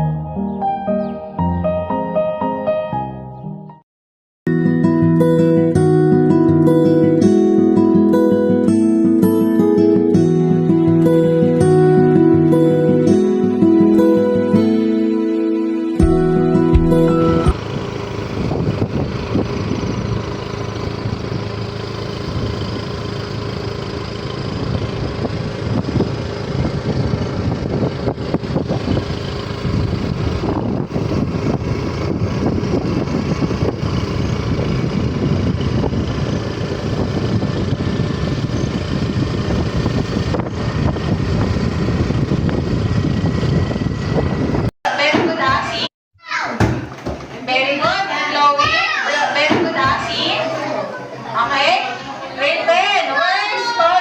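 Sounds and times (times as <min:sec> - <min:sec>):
wind noise: 0:16.0 - 0:21.6, 0:24.4 - 0:44.7
vehicle engine running: 0:16.0 - 0:44.7
road noise: 0:16.1 - 0:44.7.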